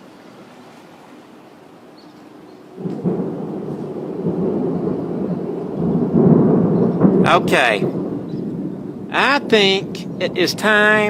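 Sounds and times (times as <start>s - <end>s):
deep rolling thunder: 2.8s - 11.0s.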